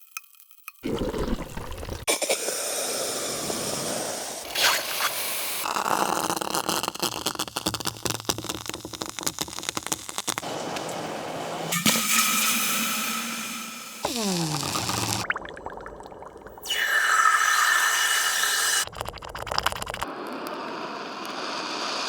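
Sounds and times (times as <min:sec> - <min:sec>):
sizzling with crackles and pops: 0:00.0 - 0:00.9, 0:03.2 - 0:16.7, 0:18.8 - 0:22.0.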